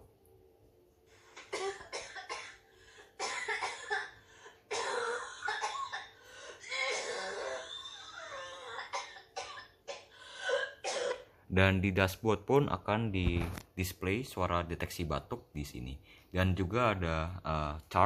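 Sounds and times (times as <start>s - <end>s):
person coughing: 1.4s - 7.5s, 8.6s - 11.3s.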